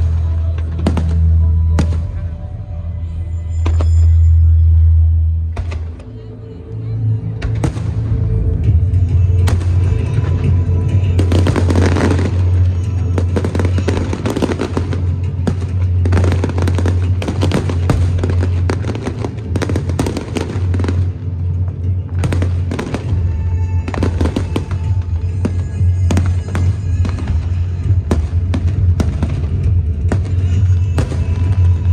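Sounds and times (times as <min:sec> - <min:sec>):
fireworks bursting and crackling: 0:00.0 - 0:06.3, 0:07.2 - 0:31.9
loud music with heavy bass: 0:06.8 - 0:31.9.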